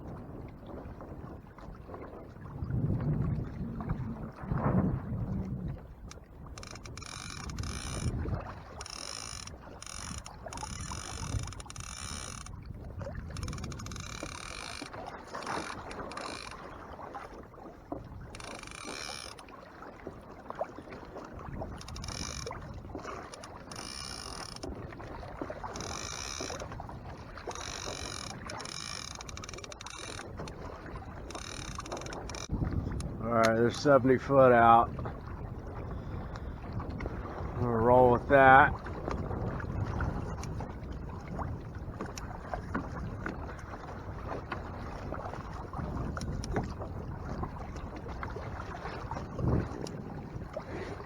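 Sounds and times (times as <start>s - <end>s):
water sloshing against hull: 0.0s - 51.0s
reel clicker ratcheting: 6.0s - 12.6s, 13.3s - 16.6s, 18.3s - 19.4s, 21.7s - 24.7s, 25.6s - 26.8s, 27.4s - 30.6s, 31.2s - 33.6s, 46.1s - 46.7s.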